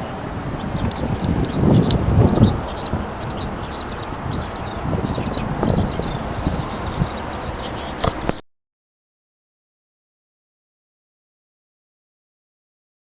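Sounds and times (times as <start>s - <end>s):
low rumbling background noise: 0.0s - 8.3s
small birds chirping: 0.0s - 8.4s.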